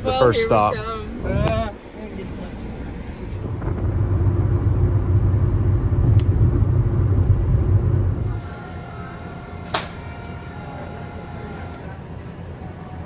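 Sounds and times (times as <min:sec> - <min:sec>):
vehicle rumbling on road: 0:00.0 - 0:13.0
sharp click: 0:09.6 - 0:10.2.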